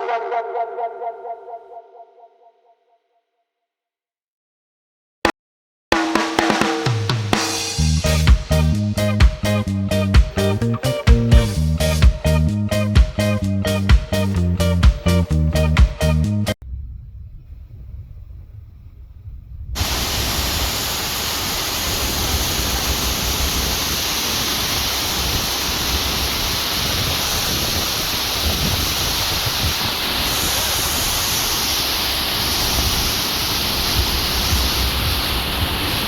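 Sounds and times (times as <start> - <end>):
wind buffeting microphone: 16.6 - 31.6
waterfall rushing: 19.8 - 36.0.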